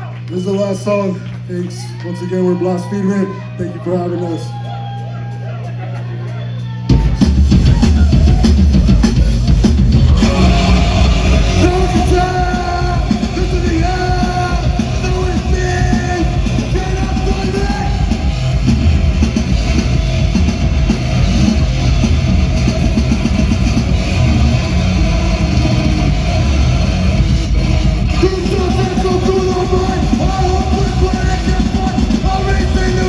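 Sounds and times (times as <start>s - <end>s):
live rock band playing: 6.9s - 33.0s.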